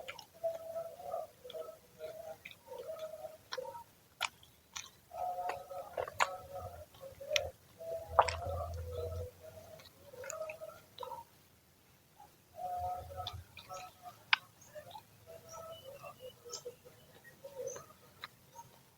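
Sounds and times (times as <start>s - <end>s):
chewing: 0.0s - 11.3s, 12.6s - 18.9s.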